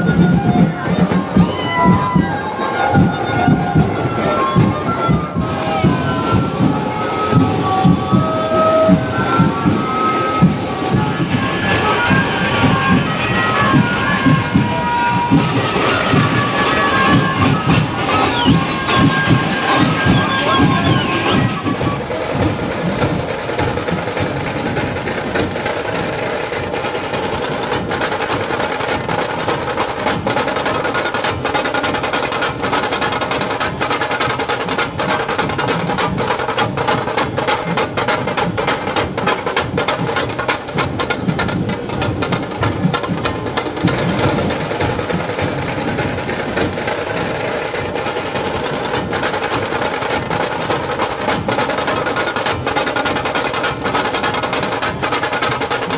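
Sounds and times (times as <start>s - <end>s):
fast procession drumming: 0.0s - 55.9s.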